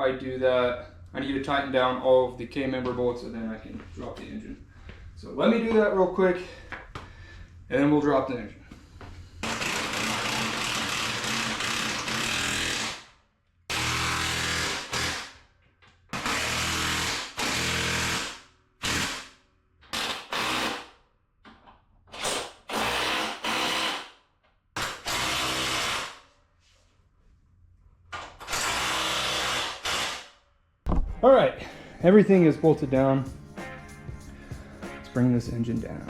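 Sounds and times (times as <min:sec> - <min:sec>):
impact wrench bursts: 0:09.4 - 0:15.4, 0:16.2 - 0:21.0, 0:22.2 - 0:24.2, 0:24.8 - 0:26.2, 0:28.4 - 0:30.4.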